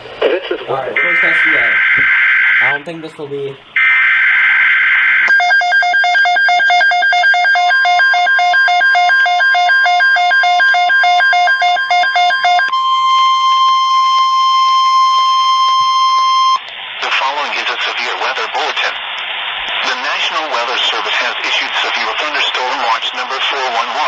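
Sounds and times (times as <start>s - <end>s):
harsh data burst buzzing: 0.0s - 5.2s
steady warning alarm tone: 0.7s - 16.6s
rapid alarm beeping: 1.0s - 3.0s, 3.8s - 16.6s.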